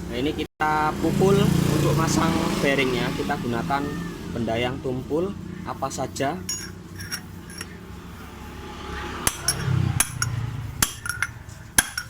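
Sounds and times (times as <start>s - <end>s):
hammer striking metal: 6.5s - 7.8s, 9.2s - 12.0s.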